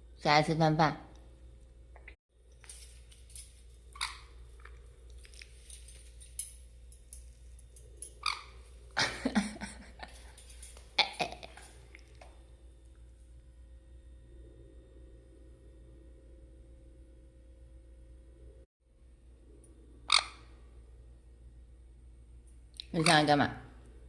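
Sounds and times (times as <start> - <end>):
parrot croaking calls: 3.9 - 4.4, 8.2 - 8.6, 20.0 - 20.5.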